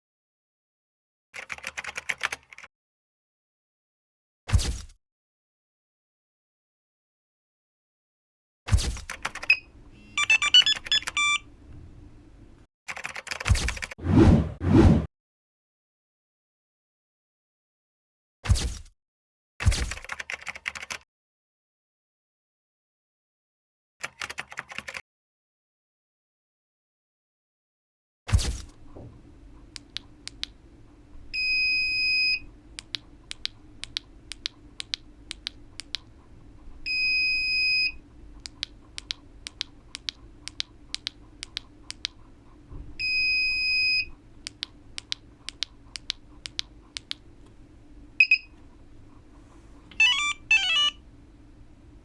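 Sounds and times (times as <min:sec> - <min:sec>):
button clicking: 0:09.2 - 0:12.6, 0:28.7 - 0:51.8
electronic beep: 0:09.4 - 0:11.4, 0:48.2 - 0:48.5.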